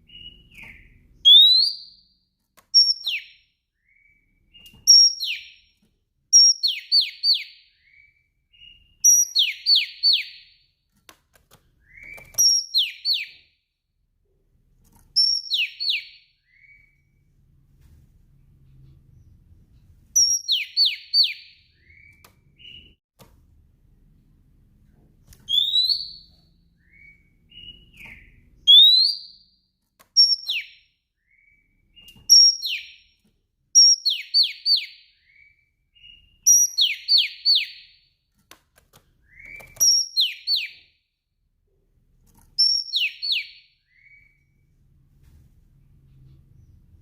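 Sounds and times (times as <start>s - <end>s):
bird calling with whistles: 0.1s - 2.0s, 25.5s - 29.4s, 42.6s - 44.4s.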